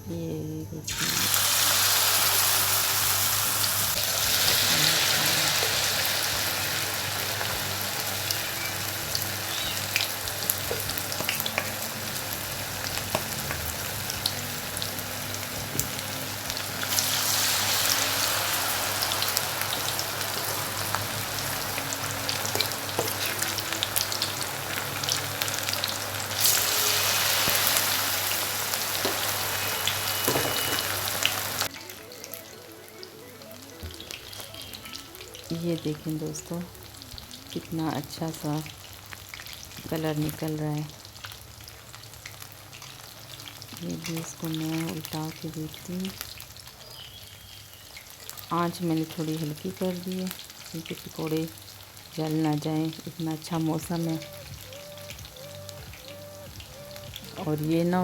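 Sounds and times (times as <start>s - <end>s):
food deep-frying in oil: 0.9s - 58.0s.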